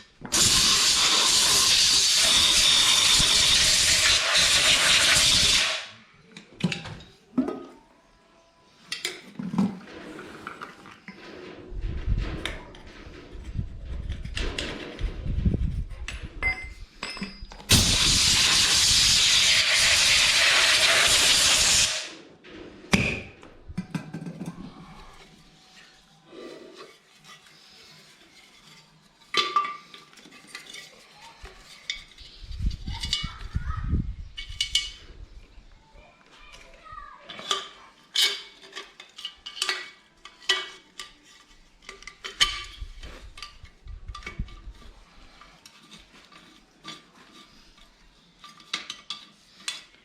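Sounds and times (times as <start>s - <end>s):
pressurised spray hissing: 0.3s - 5.9s, 17.7s - 22.2s.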